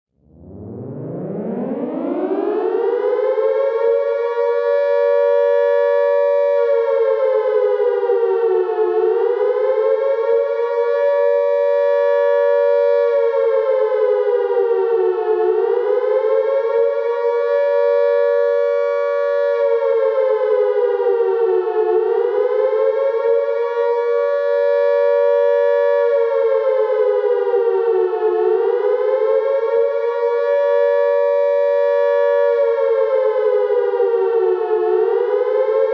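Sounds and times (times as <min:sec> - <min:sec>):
air-raid siren wailing: 0:00.3 - 0:35.9.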